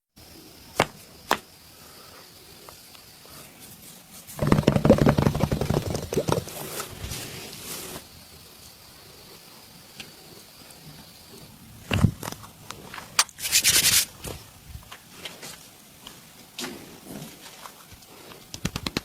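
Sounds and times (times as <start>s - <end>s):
sharp cracks: 0.7s - 1.5s, 18.5s - 19.0s
hands slapping on a back: 0.8s - 1.4s, 18.5s - 19.0s.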